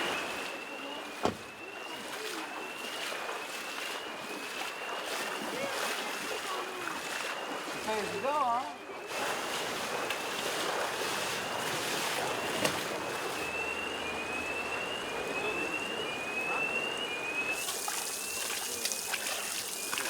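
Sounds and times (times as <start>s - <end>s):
rushing floodwater: 0.0s - 16.8s, 17.4s - 20.0s
faint high rising tone: 11.4s - 20.0s.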